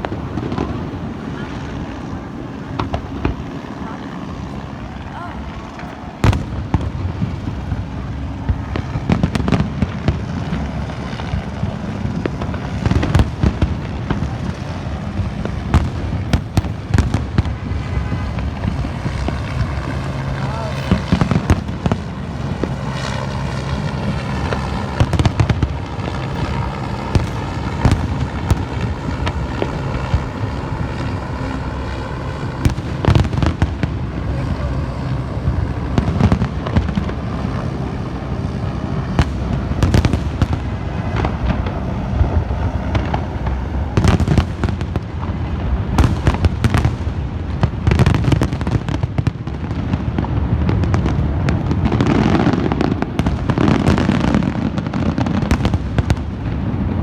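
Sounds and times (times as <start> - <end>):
fireworks bangs and crackling: 0.0 - 57.0.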